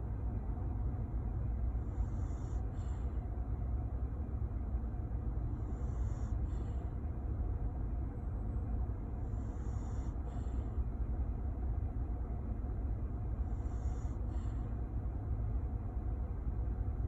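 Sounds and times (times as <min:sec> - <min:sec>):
steady low rumble: 0:00.0 - 0:17.0
soft snoring breaths: 0:01.7 - 0:03.4, 0:05.4 - 0:07.1, 0:09.1 - 0:10.9, 0:13.3 - 0:14.9.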